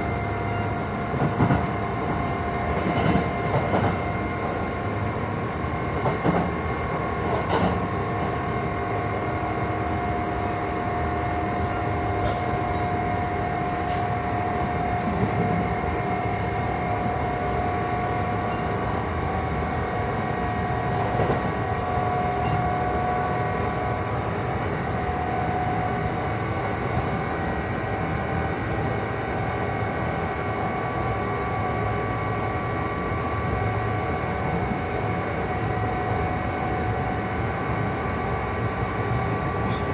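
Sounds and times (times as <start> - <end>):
rail-joint clicks: 2.8 - 4.0, 5.9 - 6.6, 7.2 - 7.9, 11.6 - 12.8, 13.8 - 14.1, 21.1 - 21.6.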